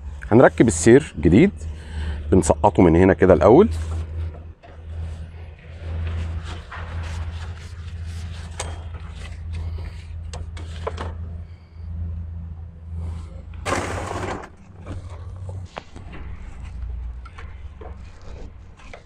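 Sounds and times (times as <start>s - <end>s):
steady low hum: 0.0s - 19.0s
rasping scrape: 3.7s - 11.0s, 13.0s - 19.0s.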